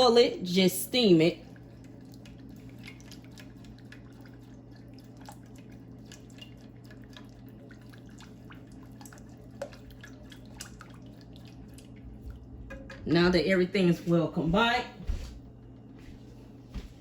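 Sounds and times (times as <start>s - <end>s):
low steady hum: 0.0s - 17.0s
oil ticking and popping in pan: 1.5s - 13.1s.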